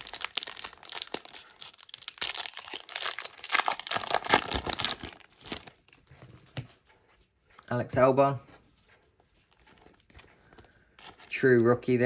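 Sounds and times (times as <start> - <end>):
cards and plastic sleeves rustling: 0.0 - 6.9, 9.3 - 12.0.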